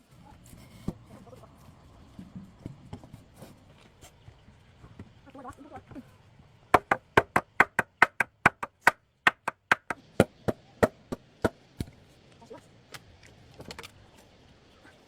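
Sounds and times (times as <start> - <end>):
sharp chopping blows: 6.8 - 11.6.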